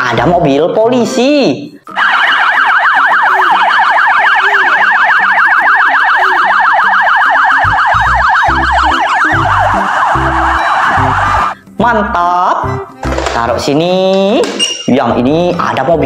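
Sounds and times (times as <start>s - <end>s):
toy electronic police siren: 1.9s - 11.6s.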